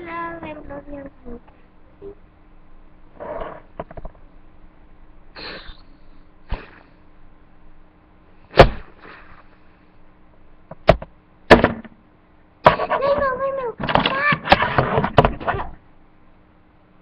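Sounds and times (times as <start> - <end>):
sharp knocks: 10.7 - 12.0.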